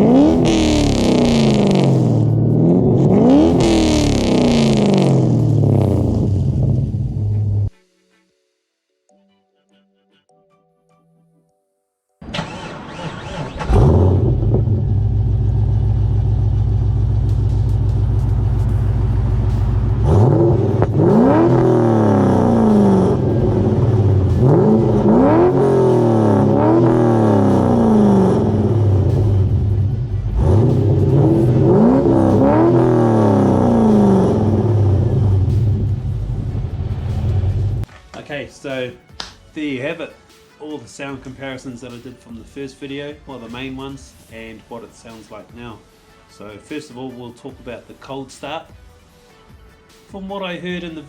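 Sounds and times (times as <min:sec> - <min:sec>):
car engine starting and idling: 0:00.0 - 0:07.7, 0:12.2 - 0:37.9
engine revving: 0:00.0 - 0:07.7, 0:12.2 - 0:37.9.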